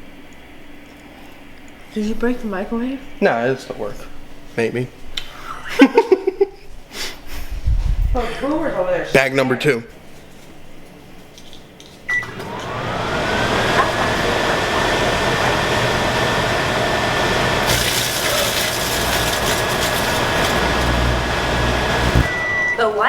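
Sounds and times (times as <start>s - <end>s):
microwave oven humming: 12.1s - 23.0s
foil bag crackling and sparking: 17.6s - 22.4s
microwave keypad beep: 22.0s - 23.0s.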